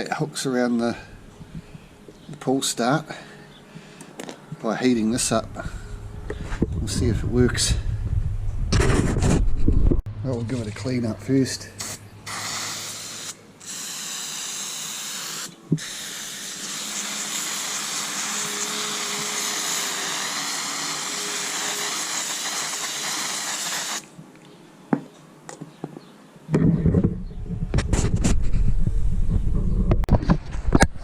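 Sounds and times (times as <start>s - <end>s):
pressurised spray hissing: 11.8s - 24.1s.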